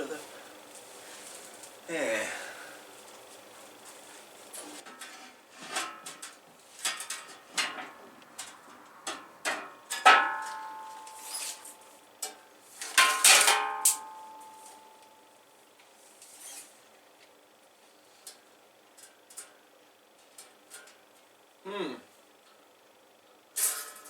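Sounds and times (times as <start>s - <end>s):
loud metal clangs: 9.5s - 11.1s, 13.0s - 14.4s.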